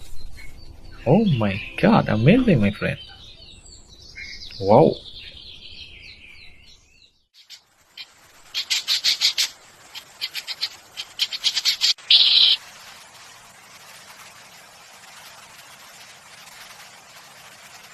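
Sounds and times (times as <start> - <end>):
small bird calling: 7.4 - 12.6.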